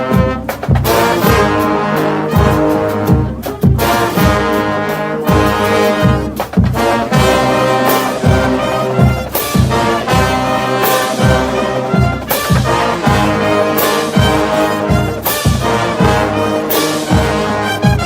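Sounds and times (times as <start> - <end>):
bass drum beat: 0.0 - 18.0
brass chords: 0.0 - 18.0.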